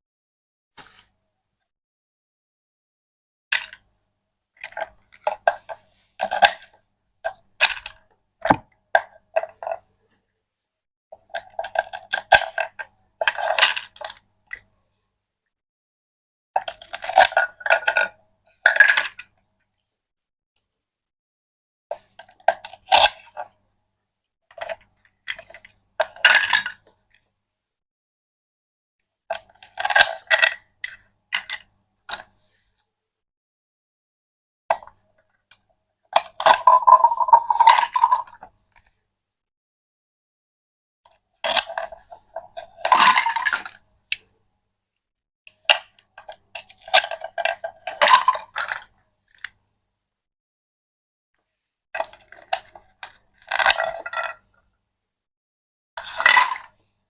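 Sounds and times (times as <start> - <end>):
toy pieces clinking and clattering: 36.5 - 38.3.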